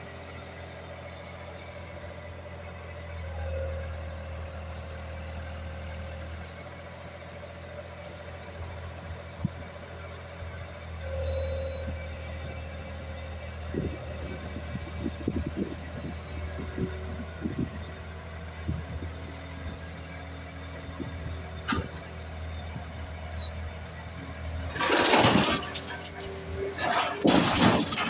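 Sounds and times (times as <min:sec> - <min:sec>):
skid steer engine running: 0:00.0 - 0:28.0
knocks and clatters: 0:24.5 - 0:28.0.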